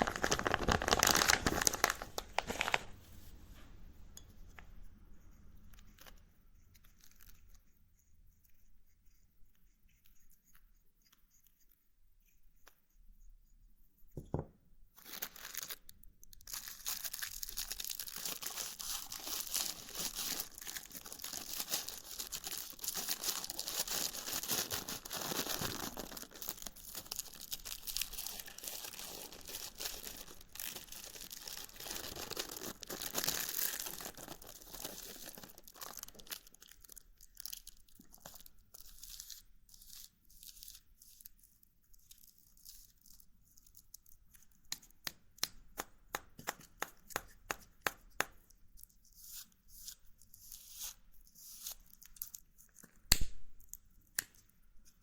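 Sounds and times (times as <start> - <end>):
paper and herb crinkling: 0.0 - 3.4, 5.6 - 7.8, 14.2 - 44.9.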